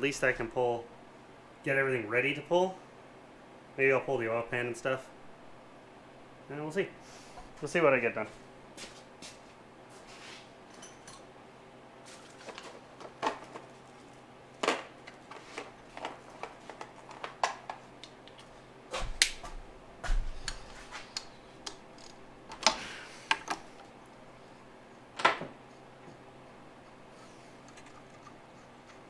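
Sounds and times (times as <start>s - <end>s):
metal engine parts clinking: 10.7s - 11.3s.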